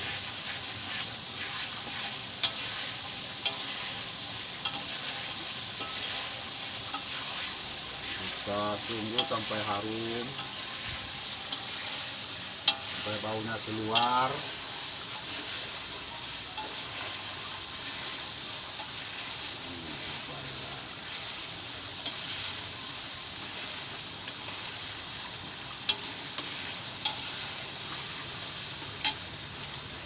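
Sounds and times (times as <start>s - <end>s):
paste sizzling in hot oil: 0.0s - 30.0s
spatula clicking against pan: 29.0s - 29.3s.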